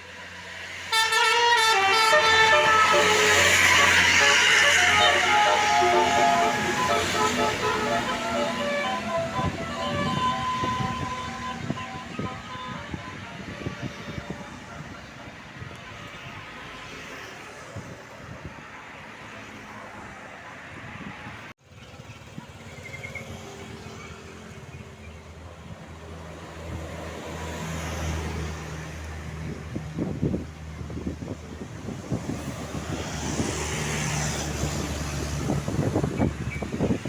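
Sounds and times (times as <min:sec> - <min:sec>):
bus engine humming: 0:00.0 - 0:15.8
passing traffic: 0:00.0 - 0:37.0.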